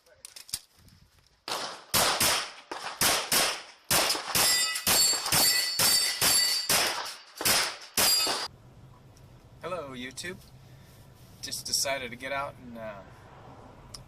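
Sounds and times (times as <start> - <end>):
rapid pistol fire: 1.5 - 8.5
steel targets clanging: 4.3 - 8.5.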